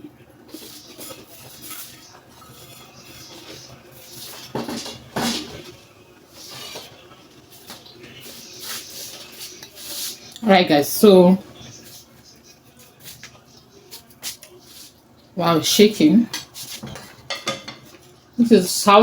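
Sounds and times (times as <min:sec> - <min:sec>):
spoon scraping a frying pan: 0:00.5 - 0:10.4, 0:15.7 - 0:18.2.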